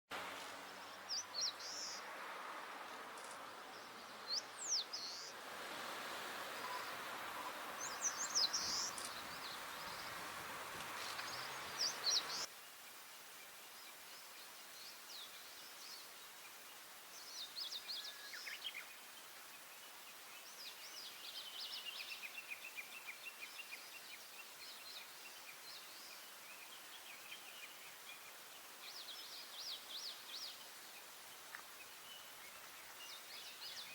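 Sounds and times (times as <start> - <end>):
steady background hiss: 0.1 - 33.9
warbler singing: 0.7 - 2.0, 3.7 - 5.3, 6.6 - 10.3, 11.0 - 12.5.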